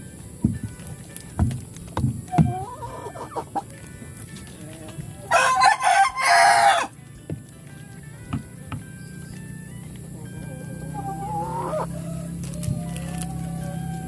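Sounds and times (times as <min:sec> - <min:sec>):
faint chicken calls: 0:02.2 - 0:03.8, 0:05.2 - 0:07.0, 0:10.4 - 0:14.0
rooster crowing: 0:05.3 - 0:06.9, 0:10.9 - 0:14.0.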